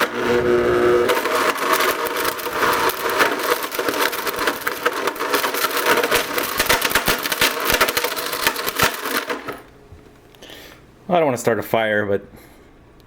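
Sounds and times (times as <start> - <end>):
blender motor hum: 0.0 - 9.7
pieces clattering in blender jar: 1.0 - 9.7.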